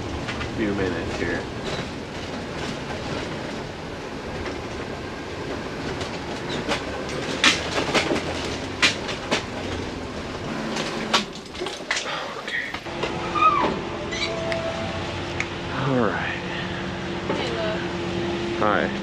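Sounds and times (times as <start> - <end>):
vehicle road rumble: 0.0 - 19.0
rattles and clicks: 0.2 - 4.9, 5.5 - 14.3.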